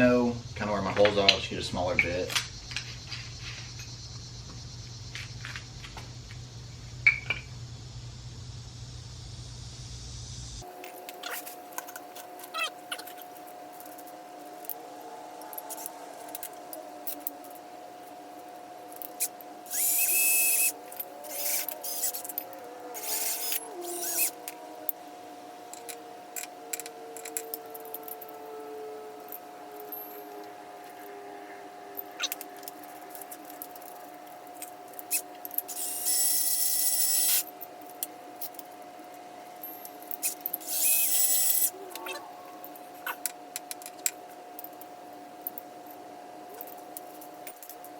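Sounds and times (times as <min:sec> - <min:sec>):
steady faint hum: 0:00.0 - 0:47.9
power drill drilling aluminum: 0:19.0 - 0:22.4, 0:23.0 - 0:24.4, 0:35.0 - 0:37.5, 0:40.2 - 0:41.7.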